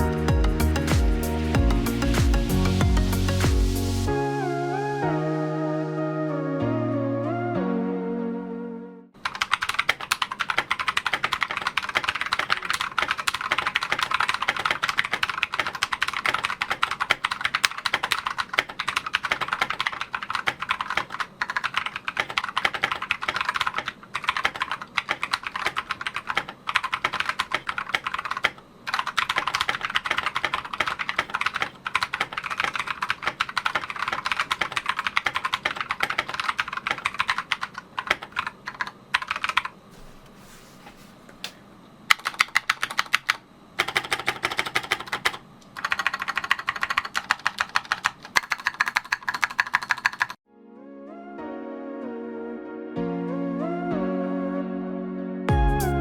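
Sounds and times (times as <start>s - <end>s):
fast mechanical keyboard typing: 9.2s - 39.8s, 42.1s - 50.4s.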